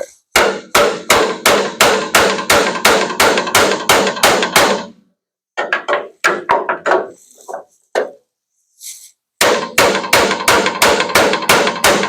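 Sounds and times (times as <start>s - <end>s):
hammer striking sheet metal: 0.3s - 5.0s, 9.4s - 12.0s.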